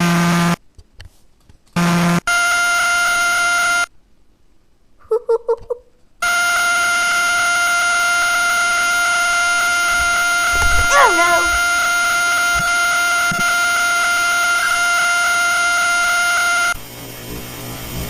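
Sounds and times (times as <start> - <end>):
electronic buzzing tones: 0.0 - 0.6, 1.8 - 3.9, 6.2 - 18.0
short warbling blips: 5.0 - 16.8.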